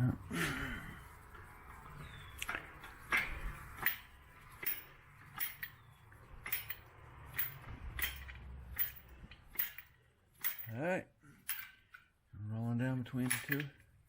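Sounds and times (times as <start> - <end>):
metallic gear clicks: 3.8 - 10.8, 13.1 - 13.8.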